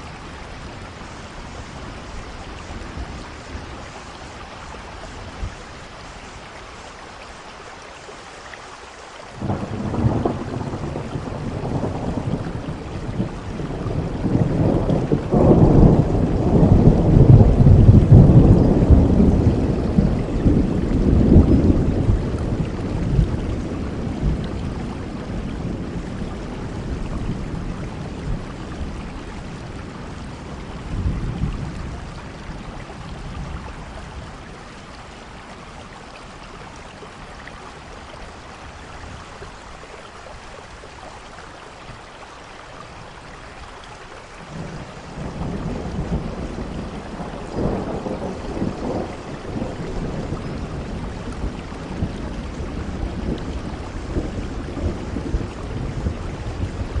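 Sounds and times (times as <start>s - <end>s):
steady rain: 0.0s - 57.0s
thunder rumbling: 9.4s - 35.7s, 44.4s - 57.0s.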